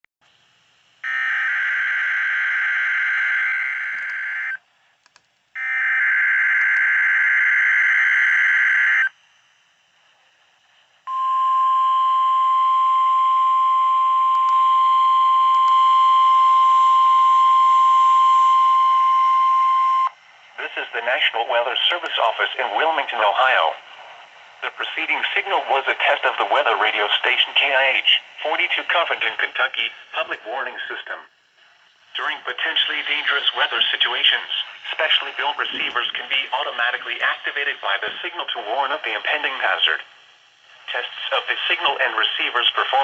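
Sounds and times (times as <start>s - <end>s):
radio hiss: 20.0s - 43.0s.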